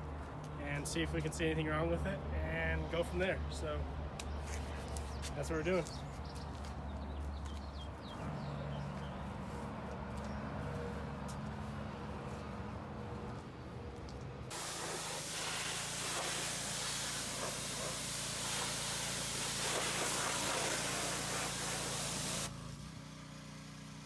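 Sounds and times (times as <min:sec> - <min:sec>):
water jet hissing: 0:14.5 - 0:22.8
pressure washer humming: 0:14.5 - 0:24.0.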